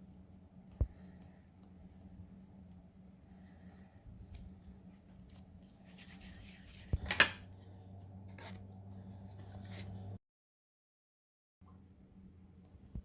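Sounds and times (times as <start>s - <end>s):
faint rustling and handling: 0.0s - 10.2s
steady low hum: 0.0s - 10.2s.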